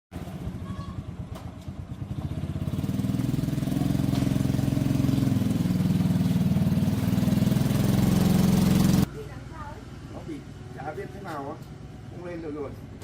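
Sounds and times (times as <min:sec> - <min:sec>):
engine running with fast pulsing: 0:01.9 - 0:09.1.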